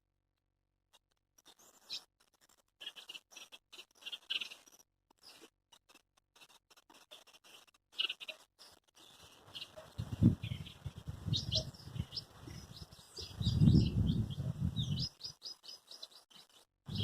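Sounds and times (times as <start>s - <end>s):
songbirds chirping: 2.8s - 5.5s, 7.1s - 17.0s.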